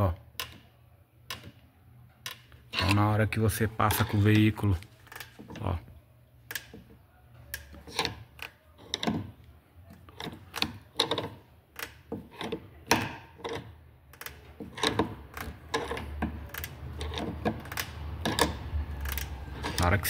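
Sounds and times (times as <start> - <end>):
suspension bushings clicking and creaking: 0.0 - 20.0.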